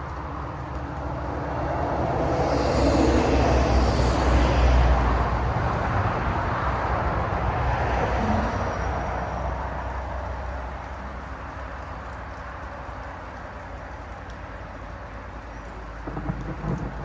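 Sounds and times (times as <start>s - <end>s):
rolling thunder: 15.9s - 17.0s.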